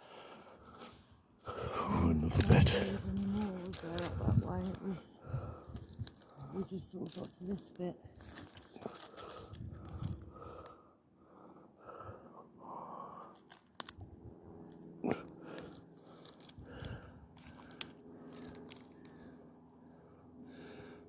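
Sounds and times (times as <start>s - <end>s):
twigs snapping: 2.4s - 4.9s, 5.5s - 10.8s, 13.3s - 14.0s, 14.7s - 19.4s
footsteps crunching dry leaves: 17.4s - 19.4s.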